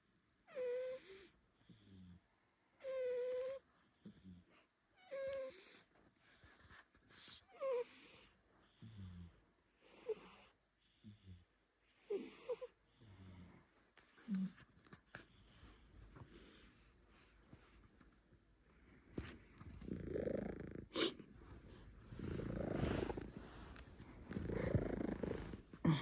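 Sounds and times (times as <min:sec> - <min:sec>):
cat snoring with whistling wheeze: 0:00.5 - 0:02.2, 0:02.8 - 0:03.6, 0:07.5 - 0:11.4, 0:12.0 - 0:13.5, 0:19.8 - 0:21.1, 0:22.1 - 0:23.4, 0:24.2 - 0:25.6.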